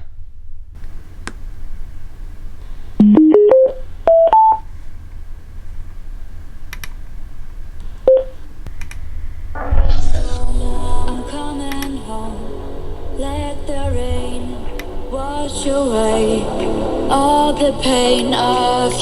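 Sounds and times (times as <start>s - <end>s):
short electronic beep: 3.0s - 4.6s
speaker start-up chime: 3.0s - 4.6s
faint clicks: 6.7s - 7.1s, 7.8s - 9.1s, 11.6s - 12.0s.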